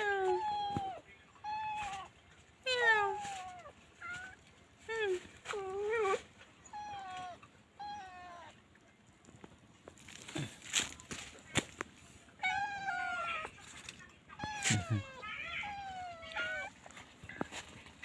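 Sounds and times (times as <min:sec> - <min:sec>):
kittens mewing: 0:14.4 - 0:16.9.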